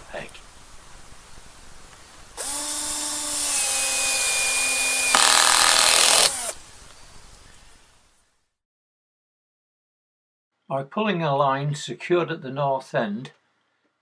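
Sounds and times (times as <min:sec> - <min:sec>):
electric drill driving screw: 0:02.4 - 0:06.6.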